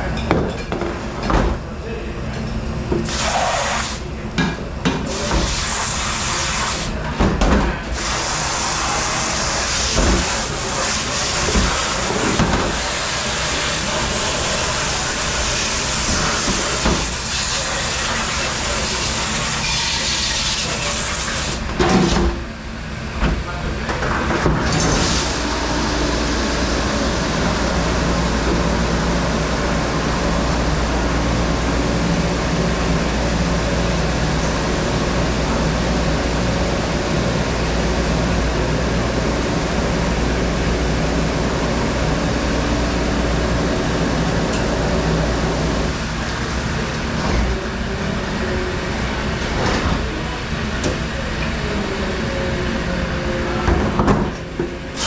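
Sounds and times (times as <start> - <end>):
machine hum and hiss: 0.0 - 55.0.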